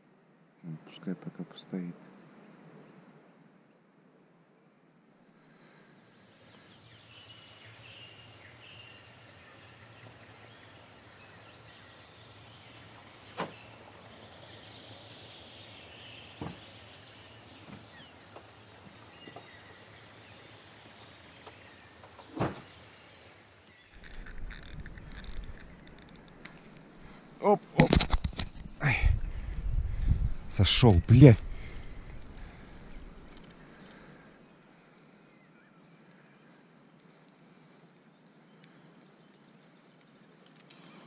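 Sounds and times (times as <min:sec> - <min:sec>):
thin chirps: 0:23.9 - 0:27.2.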